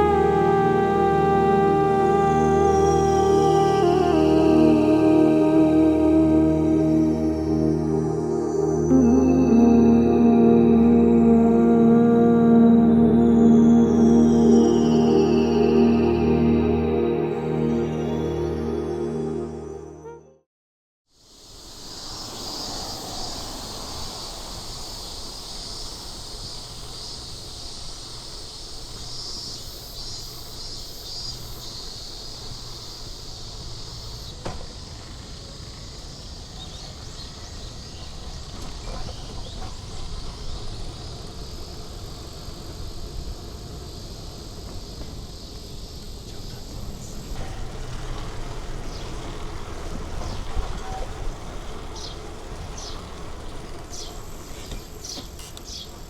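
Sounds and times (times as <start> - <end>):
high insect drone: 0.0 - 19.6, 21.1 - 56.0
low traffic rumble: 32.4 - 56.0.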